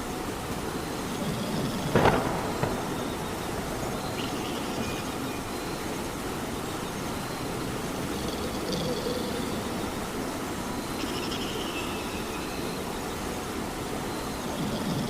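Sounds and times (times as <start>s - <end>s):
steady rain: 0.0s - 15.0s.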